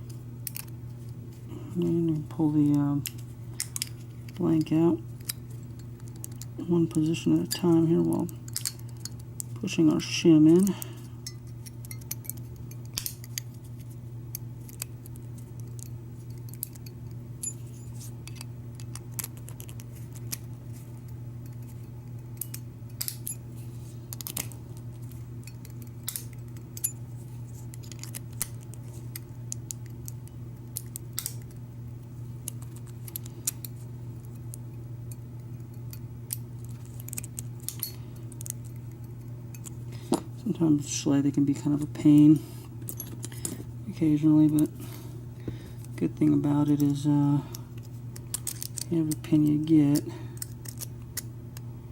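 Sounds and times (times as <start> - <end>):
steady low hum: 0.0 - 51.9
small metallic clicks and scrapes: 45.8 - 51.3.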